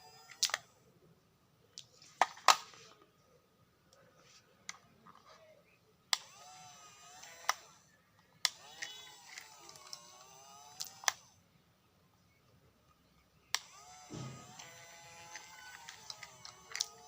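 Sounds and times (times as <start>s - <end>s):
small electric motors whirring: 0.0s - 0.8s, 6.1s - 11.4s, 13.5s - 17.0s
sharp clicks: 7.2s - 7.7s, 8.4s - 11.3s, 13.5s - 17.0s.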